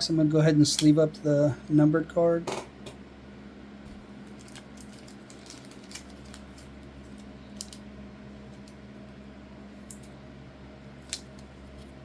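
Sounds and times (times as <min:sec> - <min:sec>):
steady low hum: 0:00.0 - 0:12.0
plastic sleeve rustling: 0:03.9 - 0:08.8.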